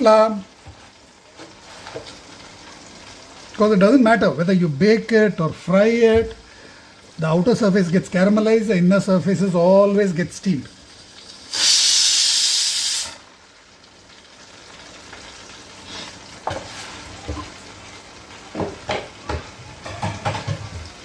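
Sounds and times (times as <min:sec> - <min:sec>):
hot cookware hissing: 0:00.0 - 0:21.0
kitchen utensils clinking: 0:18.5 - 0:21.0.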